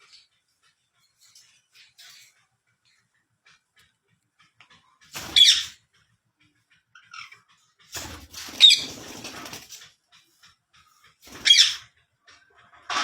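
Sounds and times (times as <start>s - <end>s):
parakeets screeching: 5.2s - 5.7s, 8.4s - 9.4s, 11.3s - 11.8s.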